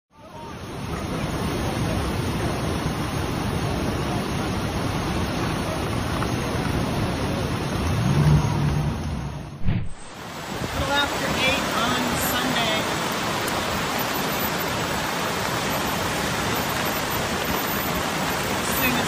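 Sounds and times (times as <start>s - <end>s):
floodwater rushing: 0.2s - 19.0s
low hum: 7.9s - 10.2s.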